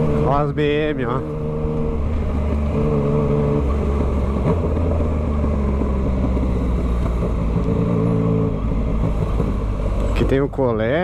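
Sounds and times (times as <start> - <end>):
motorcycle engine running: 0.0 - 11.0.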